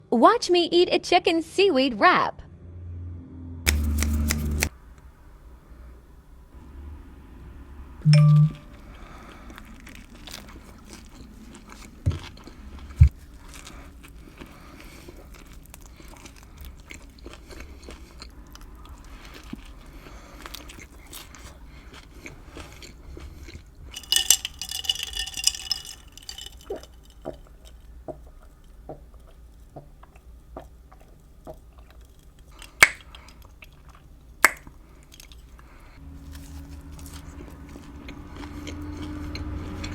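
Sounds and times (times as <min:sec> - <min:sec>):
biting and chewing: 0:03.7 - 0:04.7, 0:08.8 - 0:39.9
crisp crunching: 0:03.7 - 0:04.7, 0:24.0 - 0:27.8.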